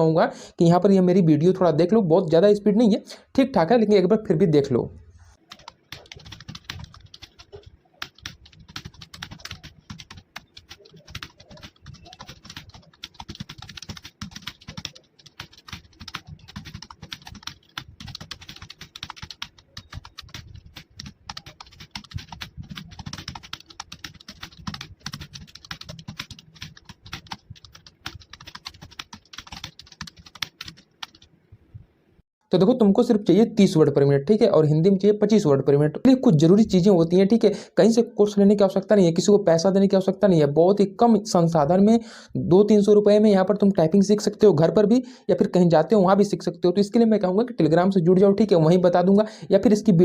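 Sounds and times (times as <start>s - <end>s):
fast typing on keyboard: 5.5s - 31.3s.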